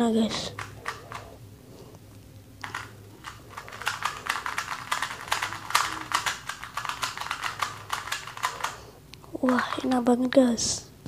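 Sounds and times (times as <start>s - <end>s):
speed cube clicking: 0.5s - 1.4s, 2.6s - 9.6s.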